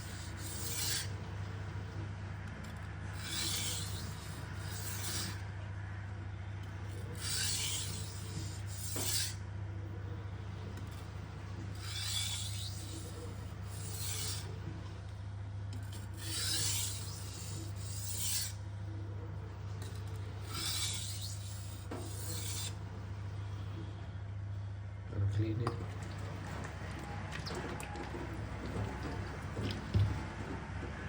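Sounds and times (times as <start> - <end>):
knife scraping on sharpening stone: 0.1 - 1.1, 3.2 - 5.4, 7.1 - 9.4, 11.7 - 14.5, 15.8 - 18.6, 19.8 - 22.8.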